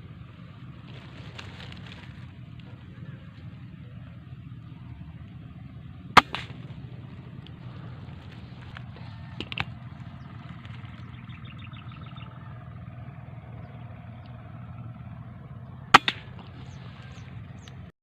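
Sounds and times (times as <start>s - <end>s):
outdoor background noise: 0.0s - 18.0s
airgun shot crack: 6.2s - 6.8s, 15.9s - 16.6s.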